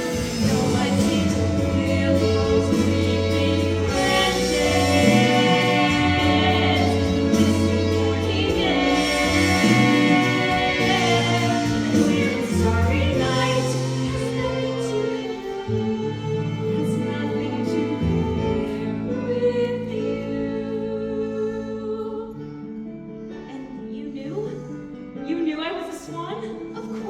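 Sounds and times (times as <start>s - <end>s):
instrumental accompaniment: 0.0s - 20.7s
cast singing in chorus: 0.4s - 14.1s.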